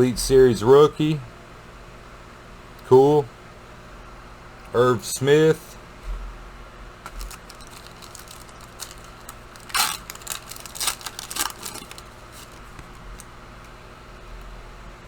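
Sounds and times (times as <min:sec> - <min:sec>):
foil wrappers crinkling: 0:07.1 - 0:13.4.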